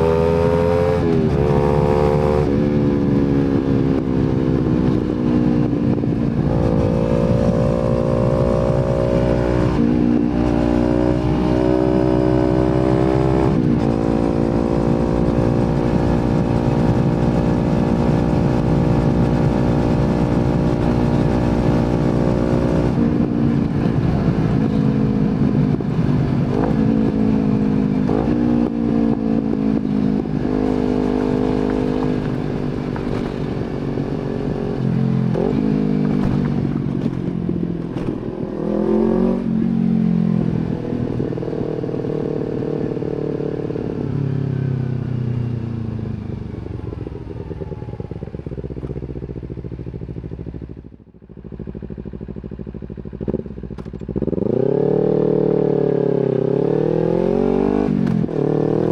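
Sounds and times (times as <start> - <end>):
motorcycle engine revving through gears: 0.0 - 58.9.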